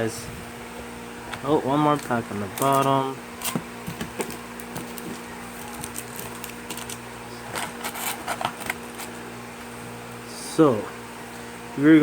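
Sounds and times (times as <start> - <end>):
steady low hum: 0.0 - 12.0
foil packs crinkling: 1.9 - 9.1.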